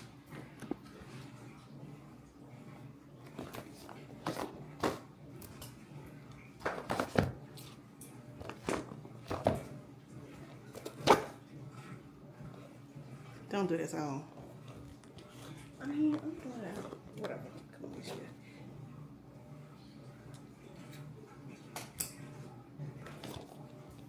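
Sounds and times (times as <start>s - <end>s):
package rustling and knocking: 6.6s - 7.4s.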